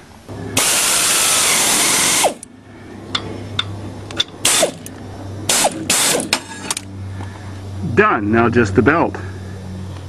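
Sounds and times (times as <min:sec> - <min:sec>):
air wrench bursts: 0:00.6 - 0:02.5, 0:04.4 - 0:04.9, 0:05.5 - 0:06.8.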